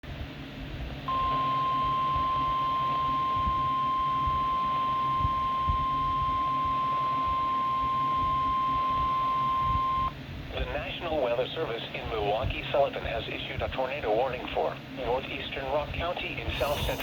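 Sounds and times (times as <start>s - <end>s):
high steady alarm tone: 1.1s - 10.1s, 16.5s - 17.0s.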